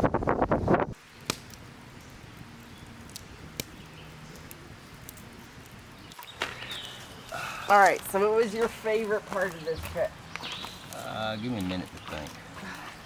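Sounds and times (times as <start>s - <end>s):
wind buffeting microphone: 0.0s - 1.0s.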